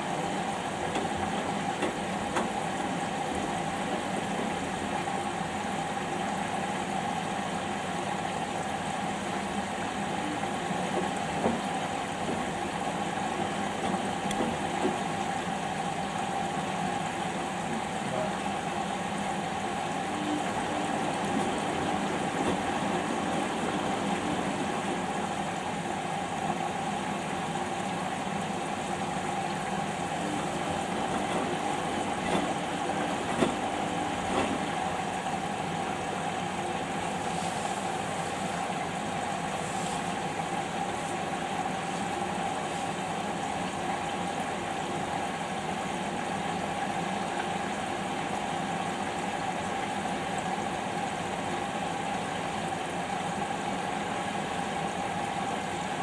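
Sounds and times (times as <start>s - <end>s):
washing machine humming: 0.0s - 56.0s
washing machine knocks: 20.9s - 24.8s, 30.4s - 34.7s.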